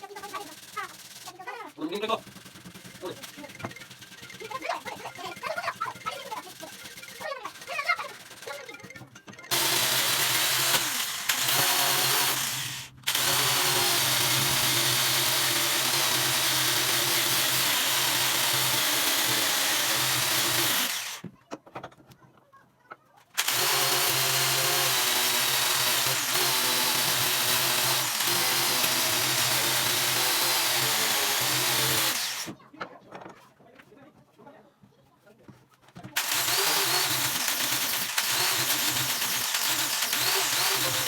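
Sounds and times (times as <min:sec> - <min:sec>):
electric power tool running: 0:02.0 - 0:08.7, 0:09.5 - 0:21.3, 0:23.4 - 0:32.6, 0:36.2 - 0:41.0.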